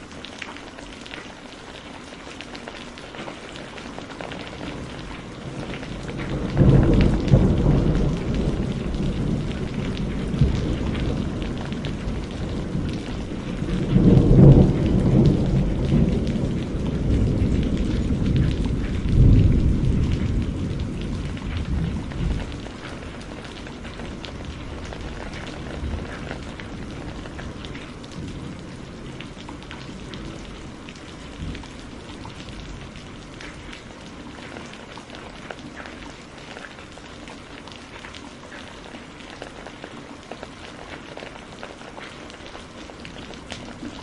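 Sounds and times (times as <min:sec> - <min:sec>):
steady rain: 0:00.0 - 0:44.0
rolling thunder: 0:04.5 - 0:33.8.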